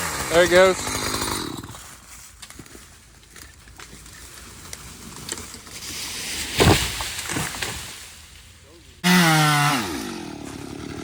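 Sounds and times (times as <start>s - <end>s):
chainsaw: 0.0s - 2.0s, 9.0s - 11.0s
wood cracking: 2.2s - 8.6s
heavy thud of falling tree: 6.4s - 8.1s.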